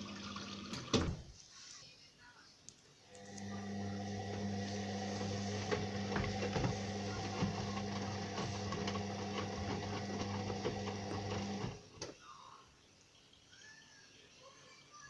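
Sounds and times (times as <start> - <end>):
washing machine humming: 0.0 - 1.2, 3.2 - 12.1.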